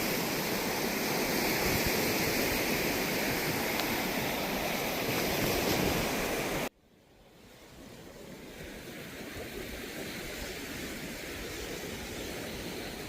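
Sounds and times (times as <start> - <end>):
ocean surf washing onto beach: 0.0 - 6.7, 7.4 - 13.0
wind buffeting microphone: 0.0 - 6.7.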